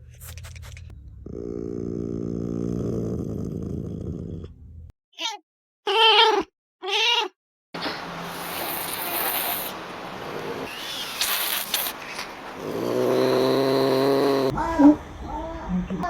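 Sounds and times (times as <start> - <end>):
background hiss: 8.0 - 14.5
wild cat calling: 8.4 - 15.7.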